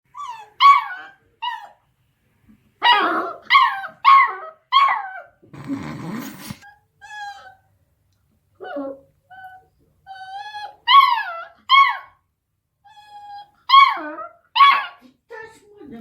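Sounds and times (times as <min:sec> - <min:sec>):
puppy whining: 0:00.1 - 0:01.8, 0:02.8 - 0:07.7, 0:08.6 - 0:12.2, 0:12.8 - 0:15.0
puppy yipping and barking: 0:00.1 - 0:01.8, 0:02.8 - 0:05.4, 0:06.6 - 0:07.6, 0:08.6 - 0:12.2, 0:12.9 - 0:15.0.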